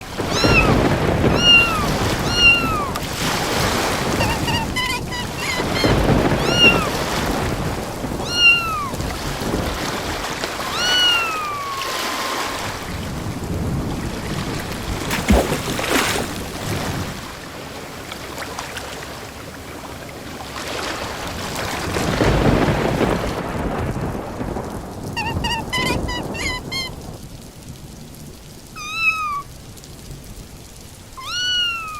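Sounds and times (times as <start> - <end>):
thunder rumbling: 0.0 - 29.0
heavy rain: 0.0 - 31.9
sharp thunder crack: 0.1 - 10.8, 21.7 - 27.2
kitten meowing: 0.3 - 3.0, 4.1 - 7.1, 8.2 - 9.0, 10.6 - 12.7, 25.2 - 26.9, 28.8 - 29.5, 31.2 - 31.9
short high squeaks: 4.1 - 6.9, 25.2 - 26.9.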